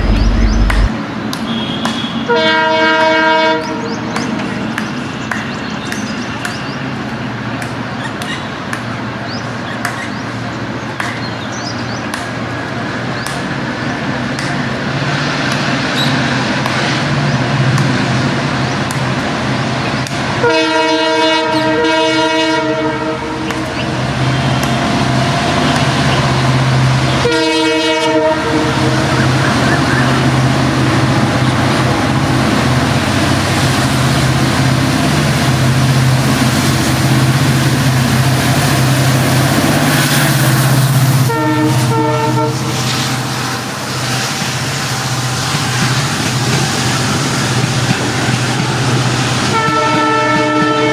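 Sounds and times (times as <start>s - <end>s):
diesel locomotive engine humming: 0.0s - 50.9s
train on the track: 0.0s - 50.9s
multi-tone air horn blasts: 1.5s - 3.8s, 20.4s - 23.6s, 27.2s - 29.3s, 41.2s - 42.7s, 49.5s - 50.9s.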